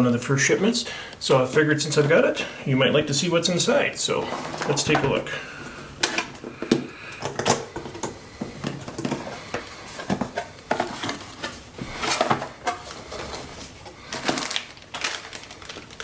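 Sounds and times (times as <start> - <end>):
packaging clicks taps and rustles: 4.3 - 16.0.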